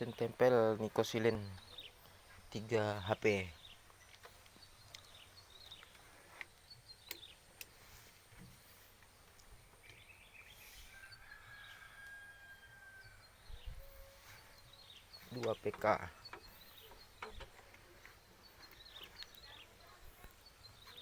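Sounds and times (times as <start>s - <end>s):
soft clicks: 3.9s - 7.8s
faint high chirps: 9.3s - 21.0s.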